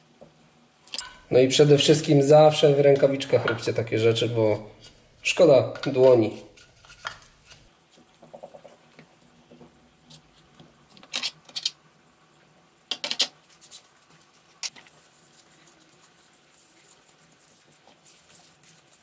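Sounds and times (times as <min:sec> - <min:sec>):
brush scraping metal: 0:04.2 - 0:07.7.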